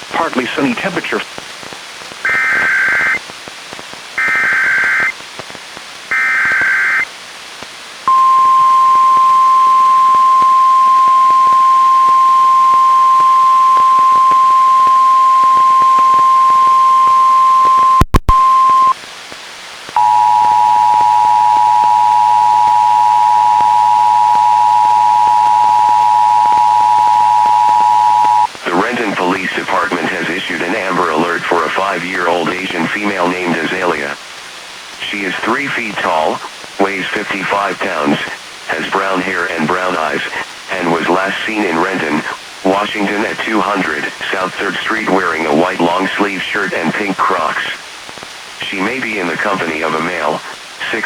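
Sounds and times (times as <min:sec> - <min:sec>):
steady warning alarm tone: 0:08.1 - 0:18.9, 0:20.0 - 0:28.5.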